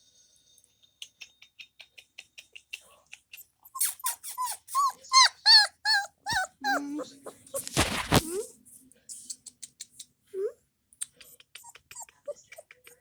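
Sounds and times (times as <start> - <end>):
puppy whimpering: 3.4 - 8.4, 10.4 - 13.0.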